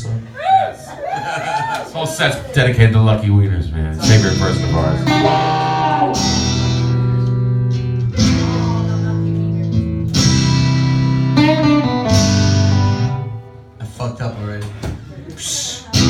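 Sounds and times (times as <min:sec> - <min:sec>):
acoustic guitar strumming chords: 0:04.0 - 0:13.8.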